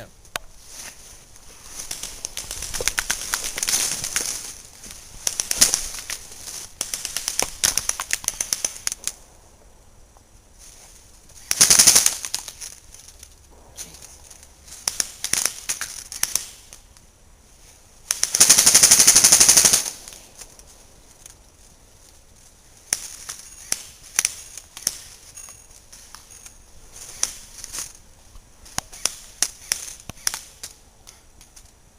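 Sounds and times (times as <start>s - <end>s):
airsoft guns firing: 11.4s - 12.6s, 13.5s - 16.6s, 18.0s - 20.3s.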